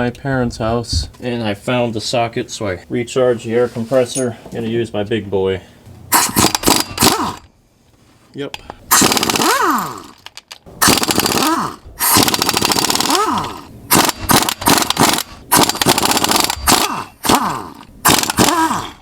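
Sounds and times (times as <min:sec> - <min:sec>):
air impact wrench hammering: 0:06.1 - 0:07.5, 0:08.9 - 0:10.2, 0:10.8 - 0:19.0
air motor whining down: 0:10.8 - 0:19.0.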